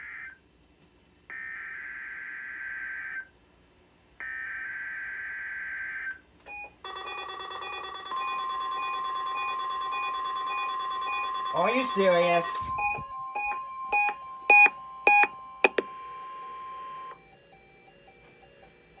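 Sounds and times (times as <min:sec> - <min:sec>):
rapid pulsing alarm beeps: 0:06.5 - 0:17.1
steady warning alarm tone: 0:06.5 - 0:19.0.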